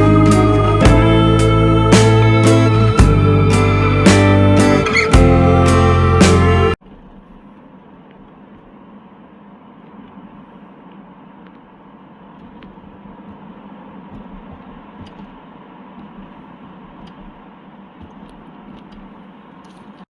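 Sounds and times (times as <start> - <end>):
car driving drone: 0.0 - 6.8.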